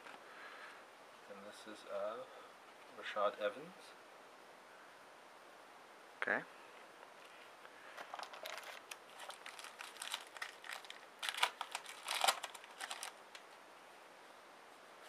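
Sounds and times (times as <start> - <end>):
foil wrapper crinkling: 8.0 - 13.4.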